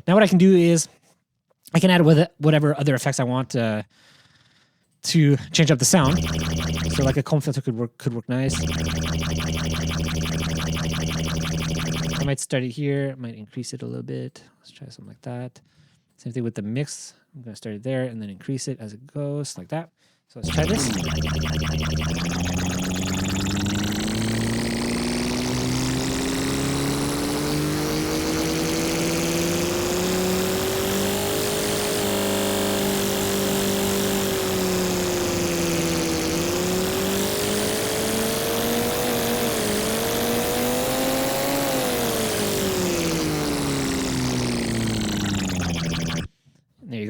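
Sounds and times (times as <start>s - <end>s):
synthesized spaceship engine drone: 6.0s - 7.2s, 8.5s - 12.3s, 20.4s - 46.3s.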